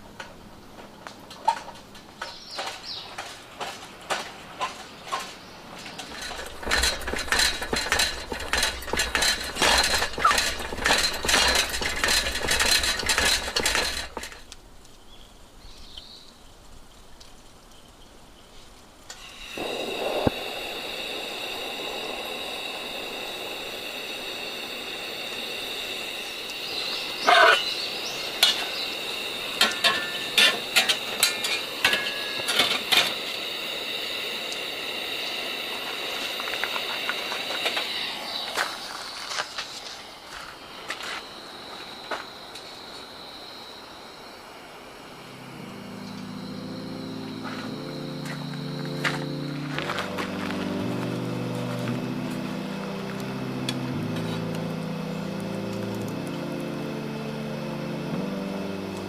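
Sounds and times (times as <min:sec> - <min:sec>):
steady hiss: 0:00.0 - 0:59.0
metal utensils clinking on cookware: 0:01.4 - 0:14.4, 0:29.5 - 0:33.2.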